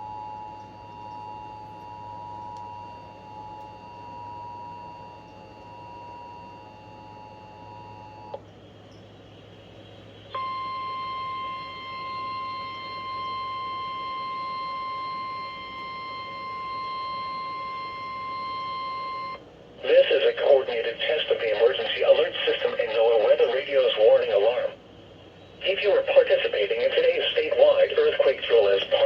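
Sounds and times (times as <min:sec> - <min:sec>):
single-pitch warning tone: 0:10.4 - 0:19.4.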